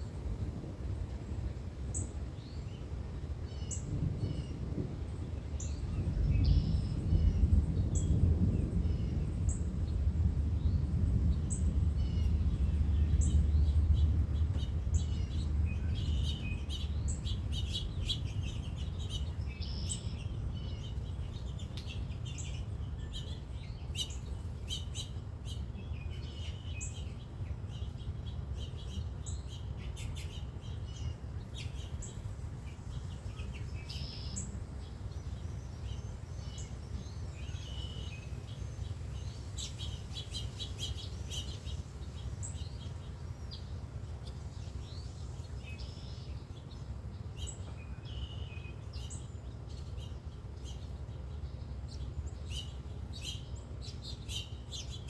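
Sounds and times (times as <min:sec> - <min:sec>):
birds chirping: 0:01.2 - 0:55.0
low rumble: 0:03.8 - 0:24.6.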